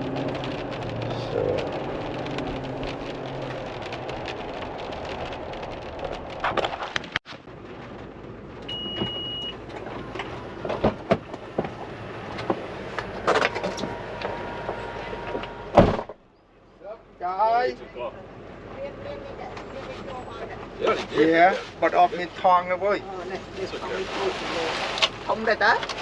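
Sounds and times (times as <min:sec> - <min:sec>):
road and rain noise in car: 0:00.0 - 0:26.0
short high beep: 0:08.7 - 0:09.5.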